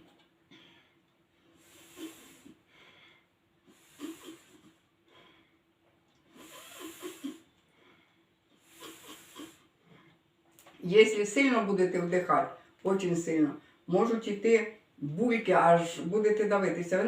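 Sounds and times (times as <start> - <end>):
person breathing through hose: 1.5 - 5.4, 6.3 - 9.7.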